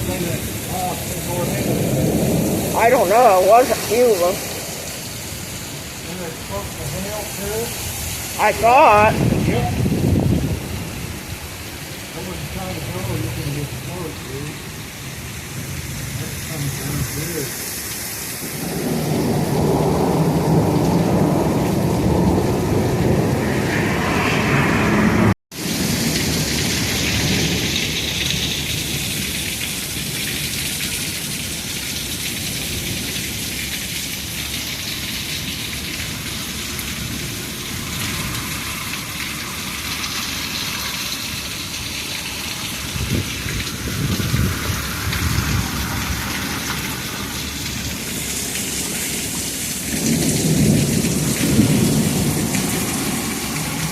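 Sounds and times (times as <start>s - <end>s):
thunder rumbling: 0.0s - 17.4s, 18.4s - 28.0s, 42.3s - 53.9s
heavy rain pouring: 0.0s - 53.9s.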